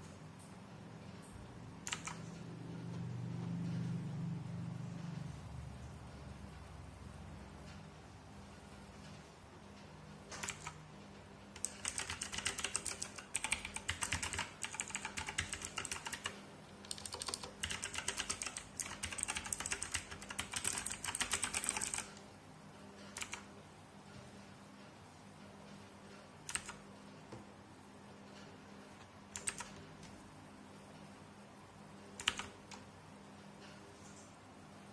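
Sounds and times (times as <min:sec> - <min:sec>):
mechanical keyboard typing: 0:01.8 - 0:02.9, 0:10.3 - 0:10.8, 0:11.5 - 0:22.2, 0:23.0 - 0:23.5, 0:26.4 - 0:26.8, 0:29.3 - 0:30.1, 0:32.2 - 0:32.9.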